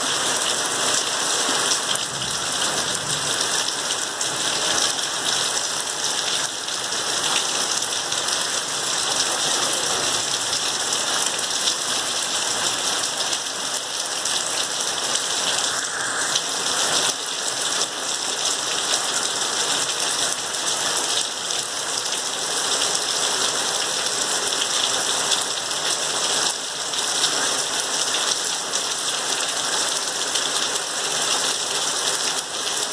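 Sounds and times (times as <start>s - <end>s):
heavy rain hissing: 0.0s - 22.7s.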